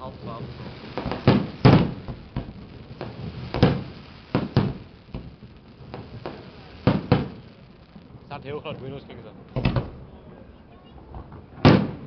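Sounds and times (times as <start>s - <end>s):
fireworks exploding: 0.0s - 12.0s.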